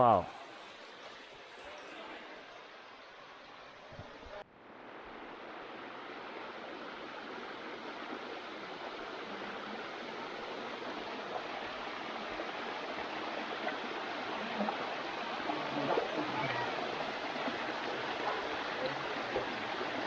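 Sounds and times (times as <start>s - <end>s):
stream cascading over rocks: 4.8s - 20.0s.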